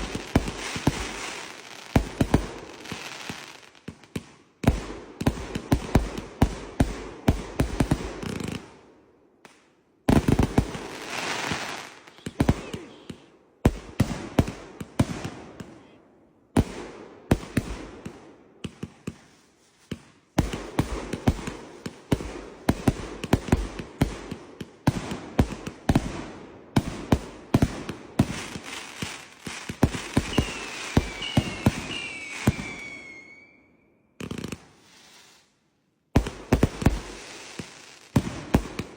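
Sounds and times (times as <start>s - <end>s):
fireworks bangs and crackling: 0.0s - 8.9s, 9.5s - 15.9s, 16.5s - 35.5s, 36.1s - 38.9s
falling firework whistles: 30.0s - 35.5s.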